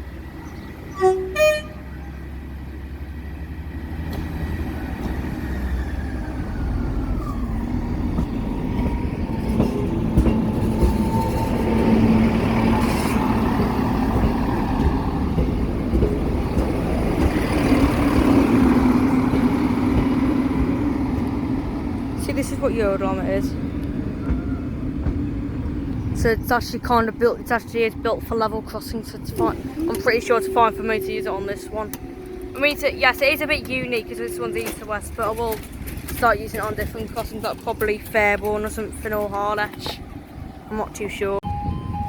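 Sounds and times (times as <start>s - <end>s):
train engine and wheels: 0.0s - 42.0s
train horn toots: 0.9s - 2.2s, 29.8s - 35.0s.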